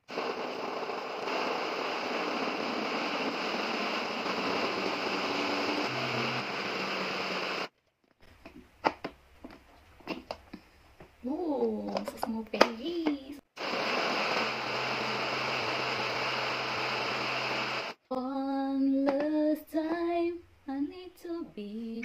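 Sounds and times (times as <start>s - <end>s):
electric blender running: 0.0s - 7.7s, 13.6s - 18.0s.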